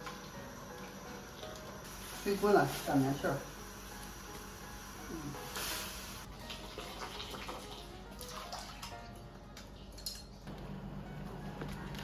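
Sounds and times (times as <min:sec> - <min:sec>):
water boiling in a pot: 0:00.0 - 0:08.6
utensils clinking against pot: 0:09.6 - 0:10.5.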